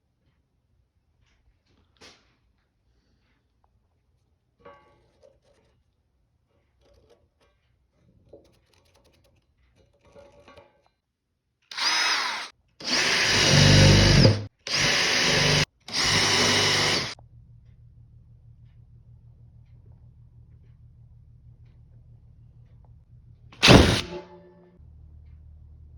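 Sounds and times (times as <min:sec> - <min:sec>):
power drill driving screws: 0:11.7 - 0:17.2, 0:23.6 - 0:24.1.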